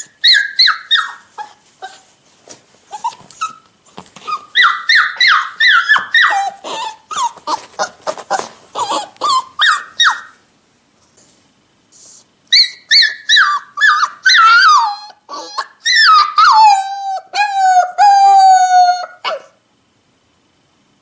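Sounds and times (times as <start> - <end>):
puppy whimpering and whining: 0.0 - 2.1, 2.9 - 10.4, 11.2 - 19.6.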